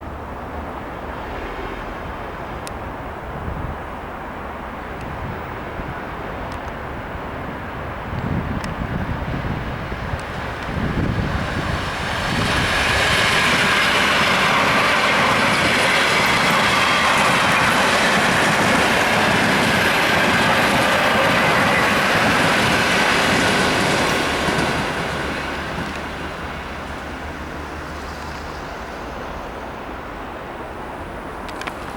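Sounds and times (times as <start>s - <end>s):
train wheels rushing on rails: 0.0s - 31.9s.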